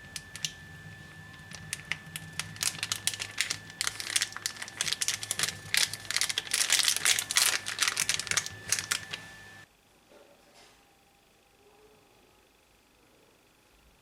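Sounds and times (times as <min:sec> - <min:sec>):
electrical hum: 0:00.0 - 0:14.0
faint high whine: 0:00.0 - 0:14.0
plastic clicking and crinkling: 0:00.1 - 0:00.6, 0:01.3 - 0:09.2.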